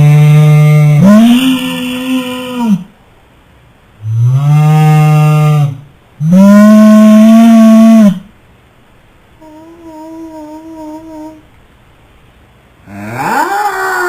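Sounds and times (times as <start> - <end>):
long mooing calls: 0.0 - 2.9, 4.0 - 8.3, 12.9 - 14.0.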